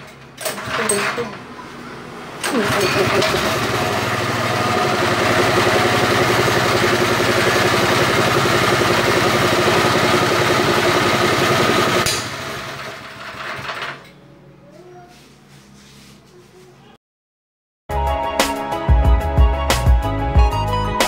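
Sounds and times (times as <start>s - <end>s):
air compressor engine running: 2.4s - 13.5s.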